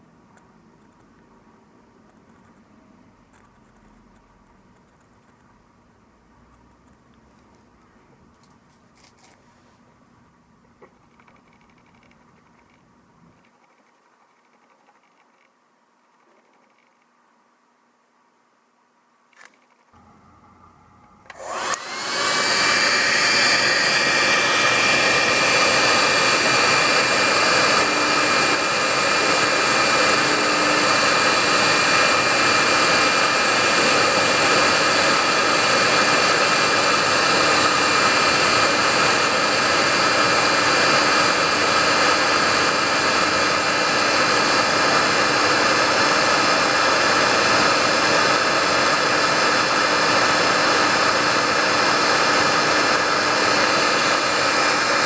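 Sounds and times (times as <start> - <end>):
electric air blower running: 20.0 - 55.0.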